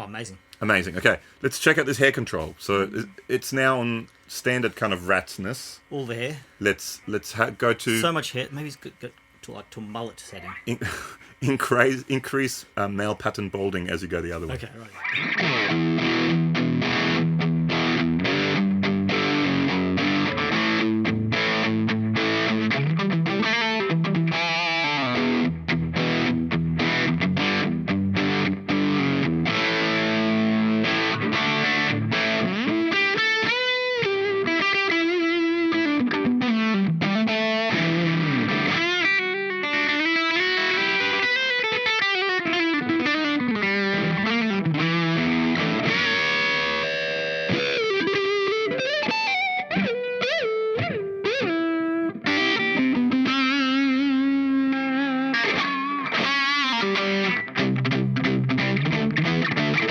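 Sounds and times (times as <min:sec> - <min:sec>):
distorted electric guitar lead: 0:14.8 - 0:59.9.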